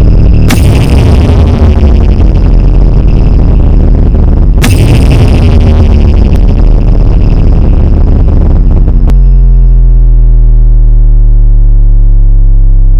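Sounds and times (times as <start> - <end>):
bass-heavy electronic music: 0.0 - 12.9
deep bass tone: 0.0 - 12.9.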